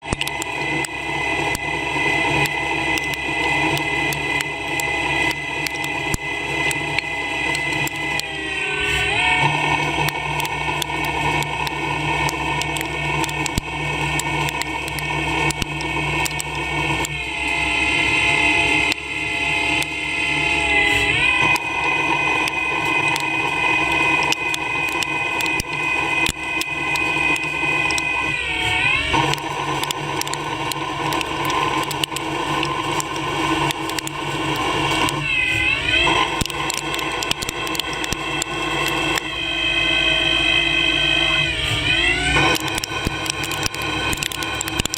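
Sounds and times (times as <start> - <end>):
lathe whine and hum: 0.0 - 44.9
sharp ticks: 9.7 - 17.6, 21.4 - 35.3, 36.0 - 39.4, 42.4 - 44.9.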